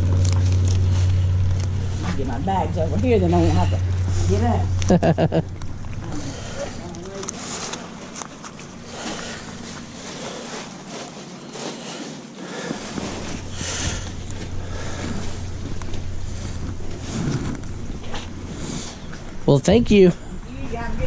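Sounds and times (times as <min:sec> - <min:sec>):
steady low hum: 0:00.0 - 0:21.0
bag rustling: 0:05.6 - 0:19.1.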